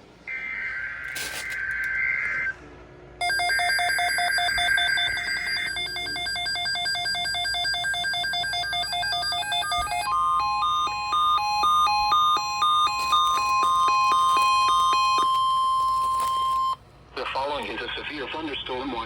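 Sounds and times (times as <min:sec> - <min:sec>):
steady warning alarm tone: 0:03.2 - 0:16.8
weather radio alert beeping: 0:03.2 - 0:16.8
warbling digital header bursts: 0:03.3 - 0:16.8.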